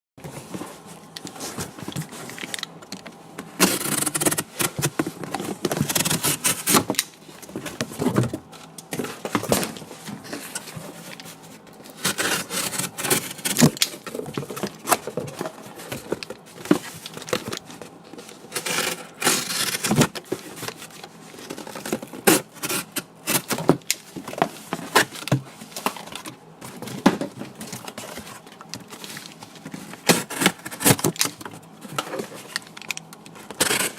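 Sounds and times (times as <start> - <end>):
cardboard being cut: 3.6 - 4.9, 12.0 - 13.7.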